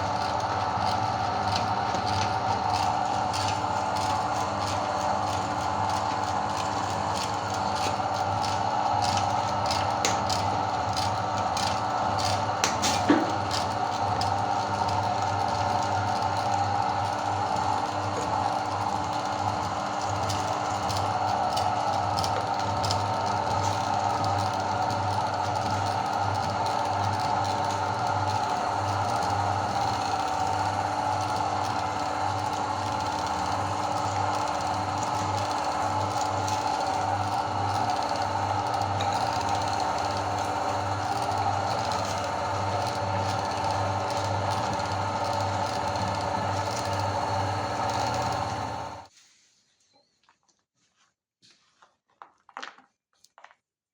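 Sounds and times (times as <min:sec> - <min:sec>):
meat grinder motor running: 0:00.0 - 0:49.1.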